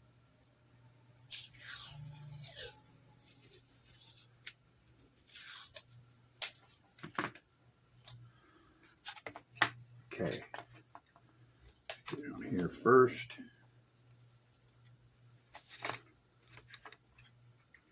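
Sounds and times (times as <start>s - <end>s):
tape tearing: 1.3s - 4.6s, 5.2s - 6.6s.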